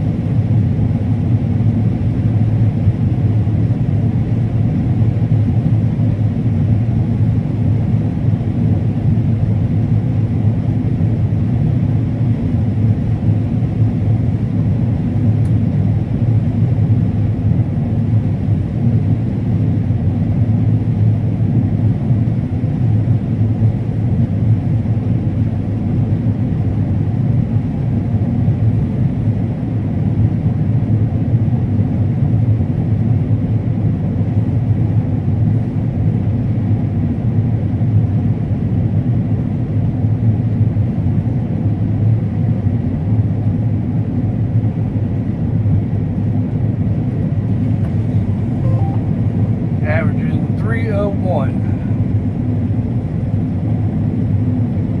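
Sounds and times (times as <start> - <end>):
combine harvester engine drone: 44.9 - 55.0.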